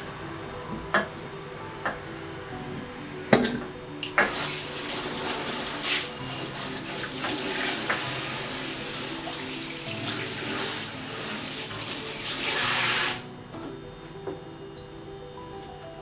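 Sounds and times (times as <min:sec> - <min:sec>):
tap water splashing onto dishes: 0:03.3 - 0:13.4.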